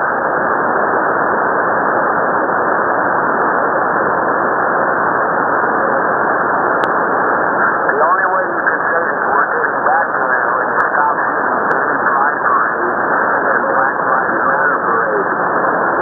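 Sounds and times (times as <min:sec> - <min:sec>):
radio static hiss: 0:00.0 - 0:16.0.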